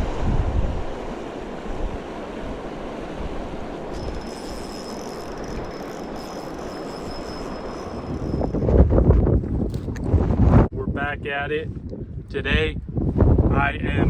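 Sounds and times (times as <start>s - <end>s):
wind rushing: 0.0s - 4.2s, 7.7s - 14.0s
moving water: 0.8s - 10.3s
faint high whine: 3.9s - 9.0s.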